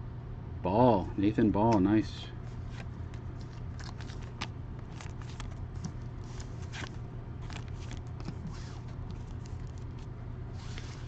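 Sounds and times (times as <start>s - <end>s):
steady low hum: 0.0s - 11.0s
trading cards rustling: 2.4s - 11.0s.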